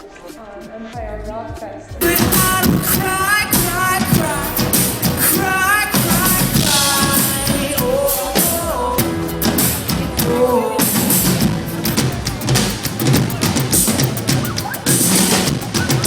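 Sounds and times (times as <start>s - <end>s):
pop-rock song with singing: 0.0s - 12.7s
drum kit: 0.0s - 16.0s.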